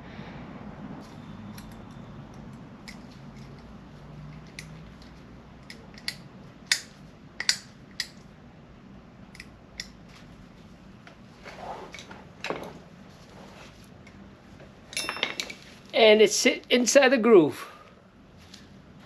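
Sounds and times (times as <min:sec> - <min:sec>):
metal parts and tools clicking: 0:01.5 - 0:03.7, 0:04.3 - 0:08.2, 0:14.9 - 0:15.6.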